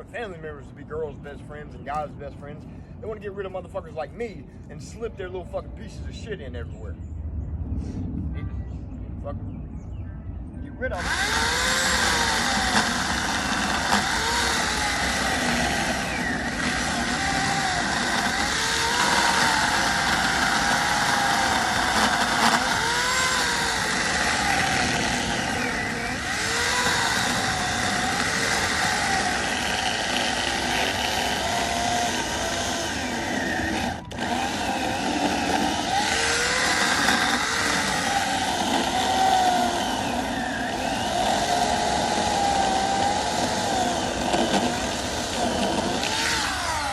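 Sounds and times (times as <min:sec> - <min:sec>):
motor running with dipping pitch: 0:10.9 - 0:46.9.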